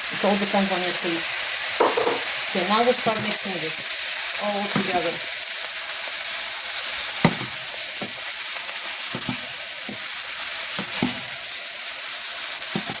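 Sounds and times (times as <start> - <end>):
rice sizzling in a wok: 0.0 - 13.0
utensil knocking against wok: 1.8 - 2.3, 9.1 - 10.1, 10.8 - 11.3, 12.8 - 13.0.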